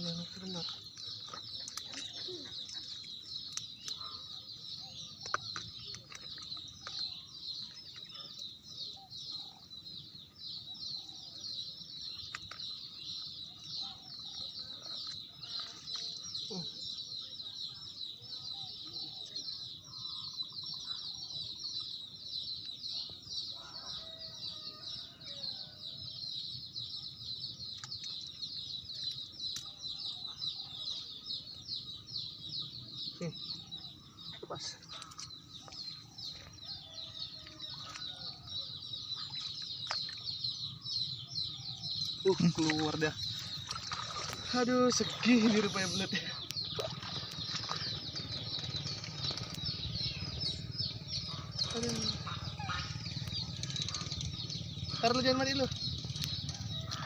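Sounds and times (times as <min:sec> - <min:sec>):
chickens clucking: 0:51.3 - 0:54.3.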